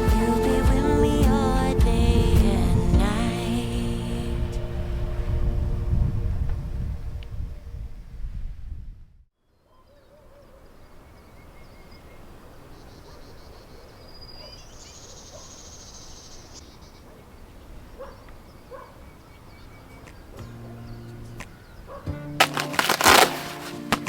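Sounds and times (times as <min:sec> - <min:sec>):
low hiss and rumble: 0:00.0 - 0:08.6.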